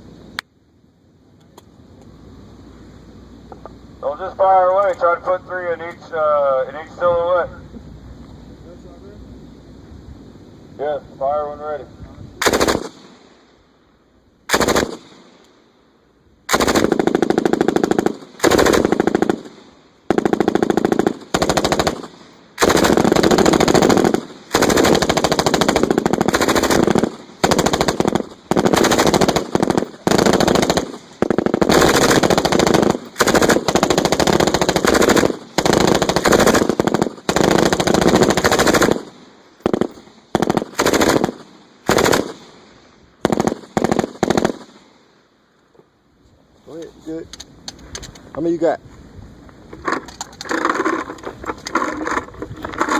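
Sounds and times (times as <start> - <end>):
machine guns firing bursts: 12.4 - 13.1, 14.5 - 15.3, 16.5 - 42.5, 43.2 - 44.8.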